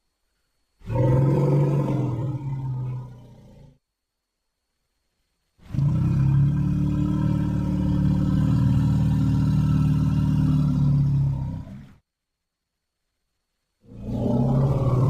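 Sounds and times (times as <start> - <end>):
low rumbling creature call: 0.8 - 3.7, 5.6 - 12.0, 13.9 - 15.0.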